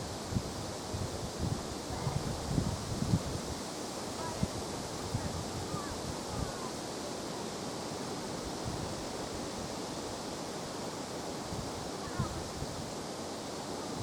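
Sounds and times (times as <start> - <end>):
wind buffeting microphone: 0.0 - 6.7, 8.4 - 9.7, 11.4 - 12.9.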